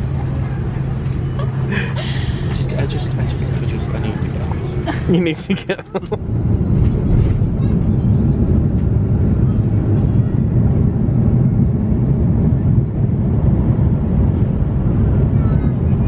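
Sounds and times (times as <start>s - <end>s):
jet engines rumbling in cabin: 0.0s - 16.0s.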